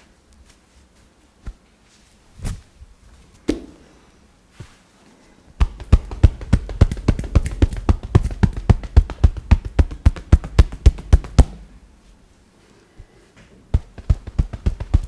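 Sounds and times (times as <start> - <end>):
hands slapping a body: 5.6 - 11.7, 13.7 - 15.0.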